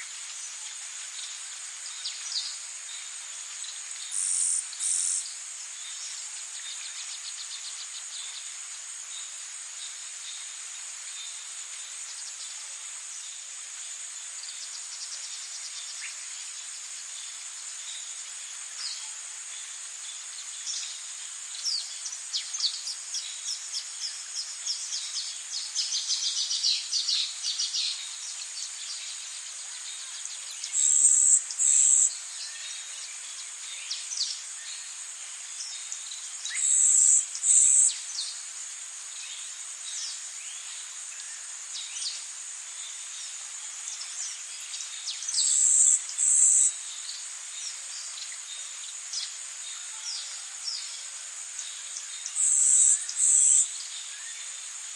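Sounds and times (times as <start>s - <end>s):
high-pitched insect drone: 4.1s - 5.3s, 30.7s - 32.9s, 36.4s - 38.3s, 45.4s - 47.2s.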